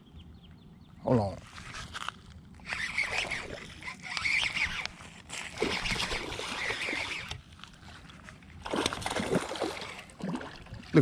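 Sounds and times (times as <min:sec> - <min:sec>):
fish splashing at water surface: 0:08.6 - 0:11.0.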